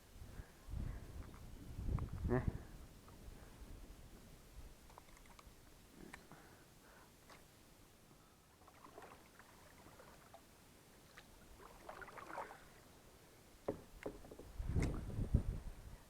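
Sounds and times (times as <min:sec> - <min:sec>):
water lapping at hull: 0:08.5 - 0:13.0.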